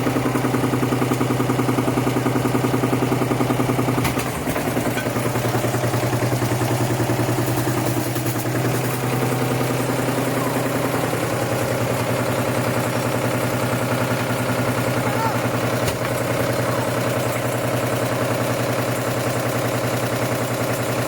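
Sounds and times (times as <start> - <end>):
washing machine motor humming: 0.0 - 21.0.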